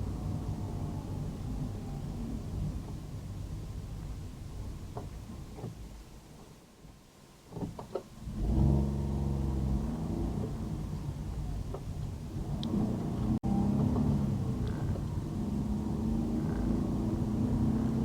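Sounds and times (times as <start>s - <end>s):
car engine speeding up: 8.3s - 11.5s, 12.2s - 18.0s.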